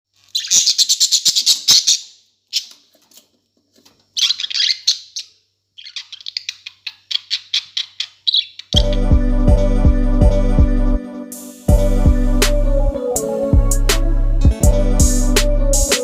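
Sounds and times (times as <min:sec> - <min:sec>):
budgerigars chirping and squawking: 0:00.3 - 0:02.9, 0:04.1 - 0:09.1.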